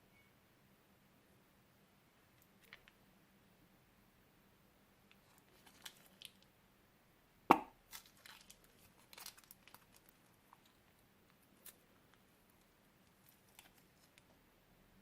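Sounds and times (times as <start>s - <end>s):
plastic bag crinkling: 5.2s - 6.5s, 7.9s - 10.9s, 13.0s - 14.3s
sharp knock: 7.5s - 7.8s.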